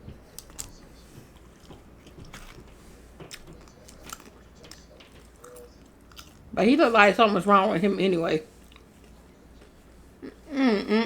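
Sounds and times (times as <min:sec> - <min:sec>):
person biting and chewing food: 0:00.2 - 0:06.5, 0:08.6 - 0:09.3.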